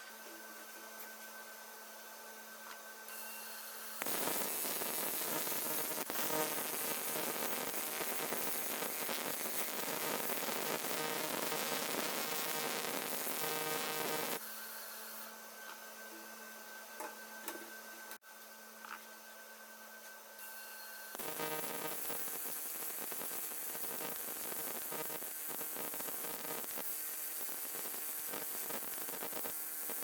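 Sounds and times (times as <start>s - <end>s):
welding arc crackling hiss: 3.1s - 15.3s, 21.1s - 30.0s.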